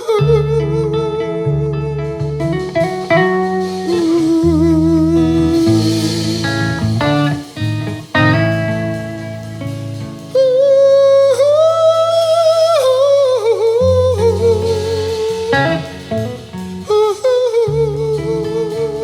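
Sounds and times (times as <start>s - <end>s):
plucked guitar: 0.0s - 19.0s
person singing wavering notes: 10.3s - 19.0s.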